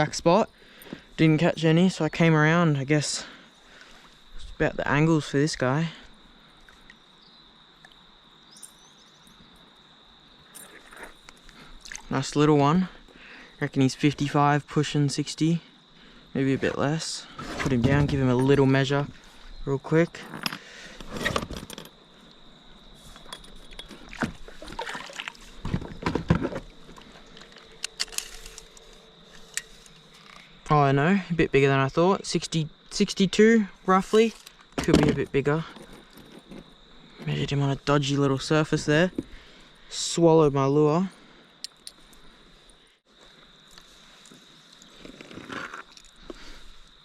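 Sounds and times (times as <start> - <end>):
insects droning: 0.0 - 47.0
water splashes: 24.0 - 25.7.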